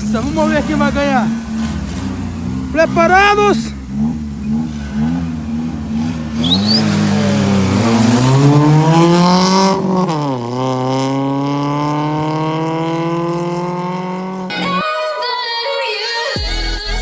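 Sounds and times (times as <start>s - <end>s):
car engine accelerating hard: 0.0s - 14.6s.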